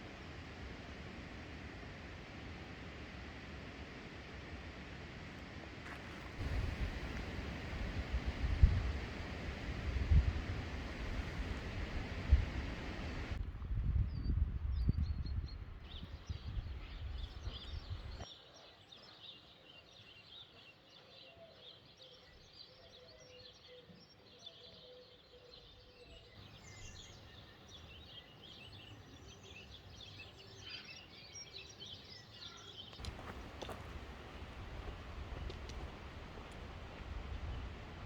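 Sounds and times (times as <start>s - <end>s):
steady hiss: 6.2s - 13.4s, 33.0s - 38.0s
birds chirping: 25.6s - 38.0s.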